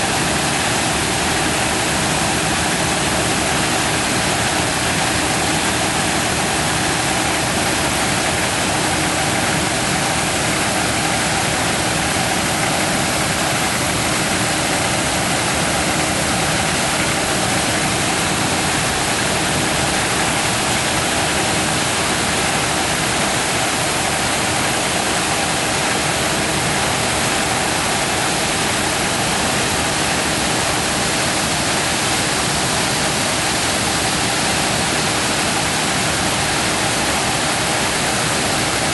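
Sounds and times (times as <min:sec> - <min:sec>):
combine harvester running: 0:00.0 - 0:38.9.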